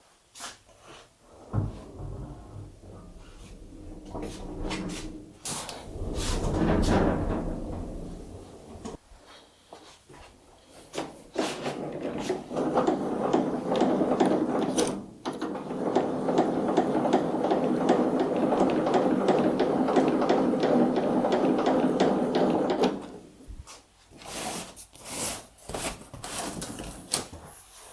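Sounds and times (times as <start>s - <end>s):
rapid clicking and scraping: 1.4s - 9.0s, 11.3s - 23.1s.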